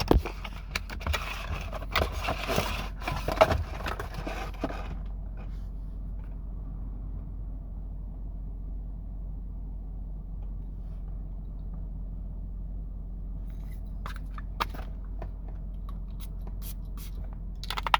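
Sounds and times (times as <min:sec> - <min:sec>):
steady low hum: 0:00.0 - 0:17.9
packaging clicking and tapping: 0:17.6 - 0:17.9.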